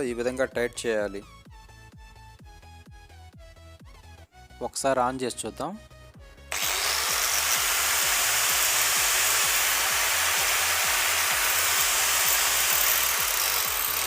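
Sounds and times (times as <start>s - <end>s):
angle grinder running: 6.5s - 14.0s.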